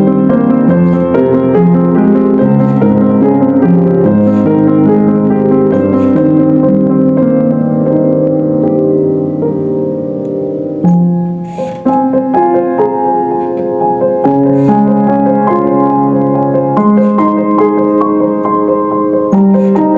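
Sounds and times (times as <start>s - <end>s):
slow piano chords: 0.0s - 19.9s.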